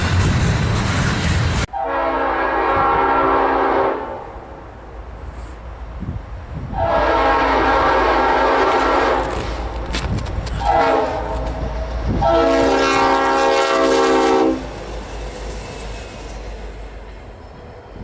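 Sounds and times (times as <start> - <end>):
train wheels rumbling on rail: 0.0 - 18.0
locomotive air horn: 1.7 - 4.4, 6.7 - 9.6, 10.6 - 11.4, 12.2 - 14.8.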